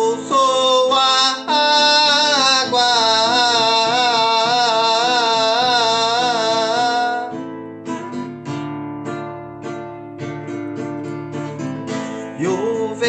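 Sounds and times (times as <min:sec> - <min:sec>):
person singing with vibrato: 0:00.0 - 0:07.6, 0:12.1 - 0:13.0
acoustic guitar strummed and plucked: 0:00.0 - 0:13.0.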